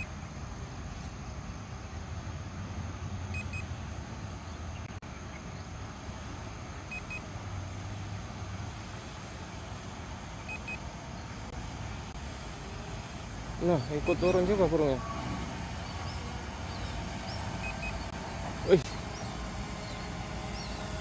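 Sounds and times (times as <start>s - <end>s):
remote controller double beeps: 3.3s - 3.7s, 6.9s - 7.2s, 10.5s - 10.8s, 17.6s - 18.0s.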